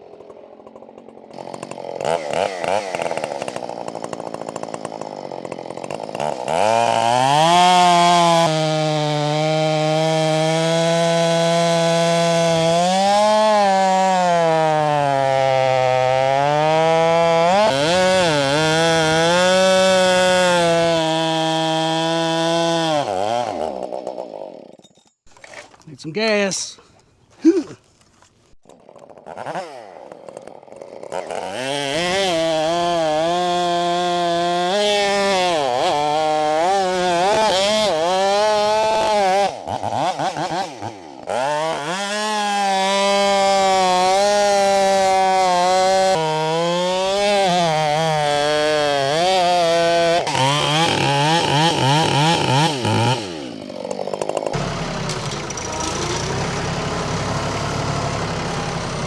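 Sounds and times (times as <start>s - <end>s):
chainsaw cutting log: 0.0s - 59.0s
engine idling: 54.6s - 59.0s.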